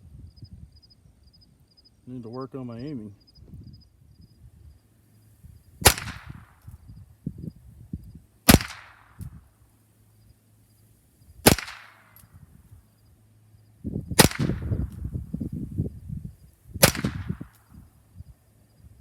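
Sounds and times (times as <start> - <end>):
rifle shots with echo: 5.8 - 6.6, 8.5 - 9.3, 11.4 - 12.2, 14.2 - 14.9, 16.8 - 17.6.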